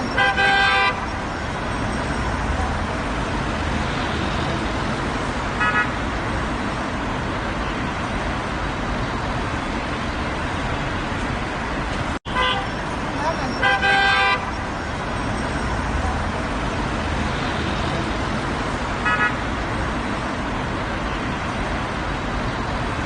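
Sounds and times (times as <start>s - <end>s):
car horn toot: 0.0s - 1.1s, 5.6s - 6.0s, 12.3s - 12.8s, 13.5s - 14.6s, 19.0s - 19.4s
road traffic noise: 0.0s - 23.0s.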